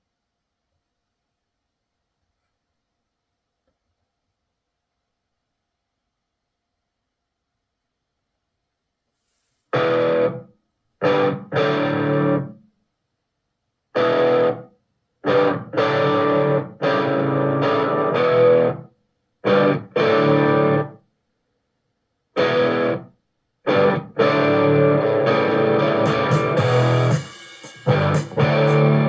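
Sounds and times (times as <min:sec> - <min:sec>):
distorted electric guitar rock music: 0:09.8 - 0:10.4, 0:11.0 - 0:12.6, 0:14.0 - 0:21.0, 0:22.4 - 0:23.1, 0:23.7 - 0:29.0.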